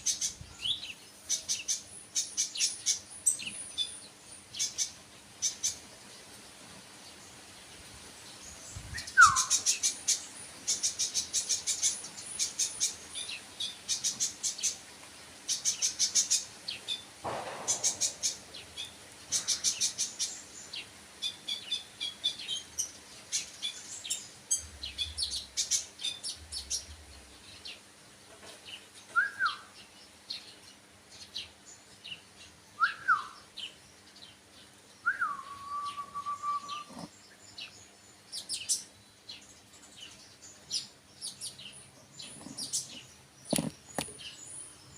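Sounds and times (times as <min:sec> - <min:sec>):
songbird chirping in trills: 0:00.0 - 0:27.9, 0:28.5 - 0:44.9
downward-slurred bird whistles: 0:09.0 - 0:09.6, 0:29.1 - 0:29.7, 0:32.8 - 0:33.4, 0:35.0 - 0:37.1.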